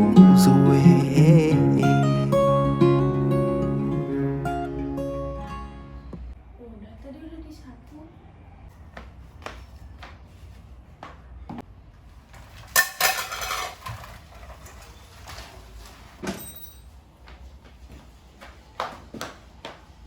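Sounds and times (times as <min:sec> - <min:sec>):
household objects clattering: 0:12.4 - 0:16.9.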